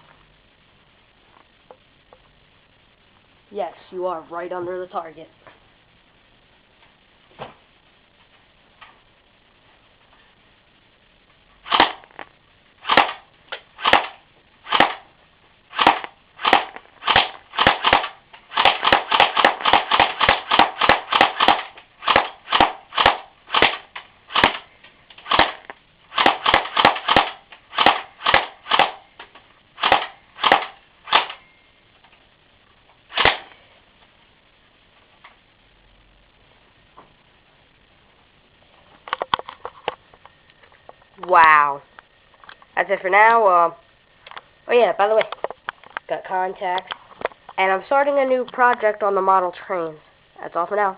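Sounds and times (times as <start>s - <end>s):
airsoft gun shots: 11.7s - 12.1s, 12.8s - 13.2s, 13.8s - 15.1s, 15.7s - 29.0s, 29.8s - 31.4s, 33.1s - 33.5s.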